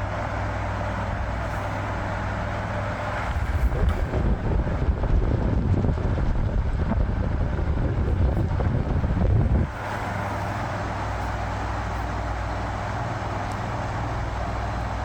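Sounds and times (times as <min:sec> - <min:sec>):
table fan motor hum: 0:00.0 - 0:15.0
wind buffeting the microphone: 0:01.0 - 0:15.0.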